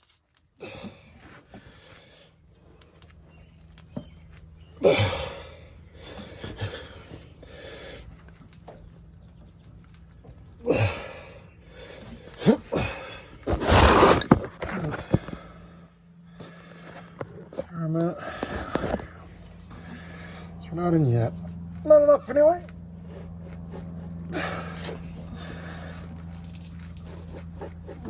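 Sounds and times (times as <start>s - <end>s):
man breathing hard and grunting: 0.6s - 2.5s, 4.8s - 8.2s, 10.6s - 13.5s, 14.8s - 20.7s, 24.2s - 26.4s.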